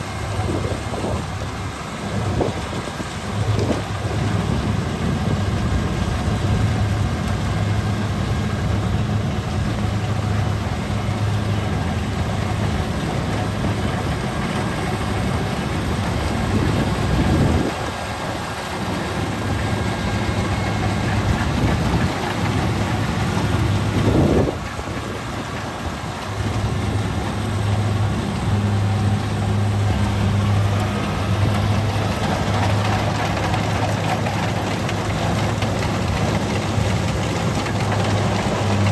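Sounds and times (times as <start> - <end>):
combine harvester diesel engine: 0.0 - 38.9.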